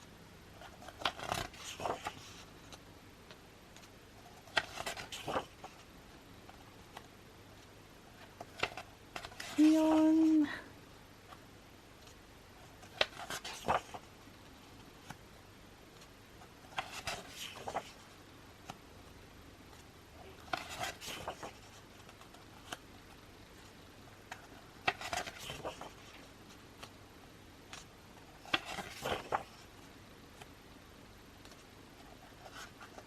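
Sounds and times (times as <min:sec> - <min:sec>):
pages turning: 0:00.6 - 0:02.8, 0:03.7 - 0:05.9, 0:08.1 - 0:10.4, 0:12.0 - 0:14.1, 0:16.0 - 0:18.8, 0:20.4 - 0:22.8, 0:23.6 - 0:27.0, 0:27.7 - 0:30.5.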